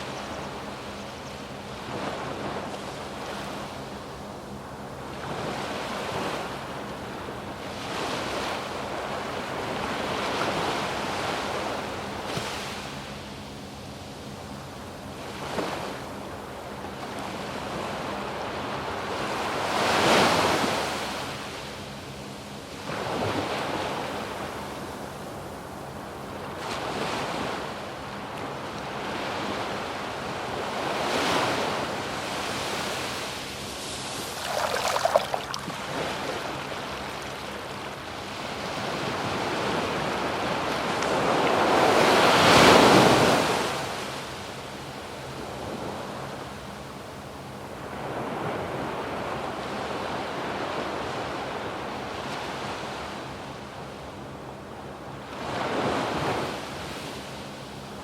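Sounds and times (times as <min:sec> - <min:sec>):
waves breaking on beach: 0:01.5 - 0:13.2, 0:17.0 - 0:21.9, 0:22.6 - 0:46.3, 0:55.2 - 0:58.0.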